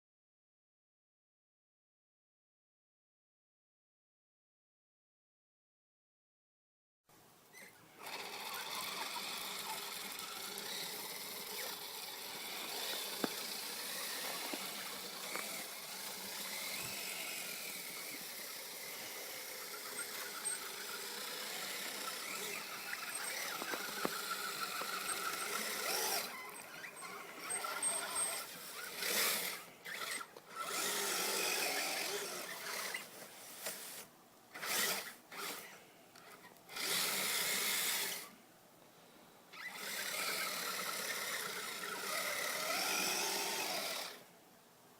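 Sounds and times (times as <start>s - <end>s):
toy vehicle motor whining: 7.5s - 38.4s, 39.5s - 44.3s.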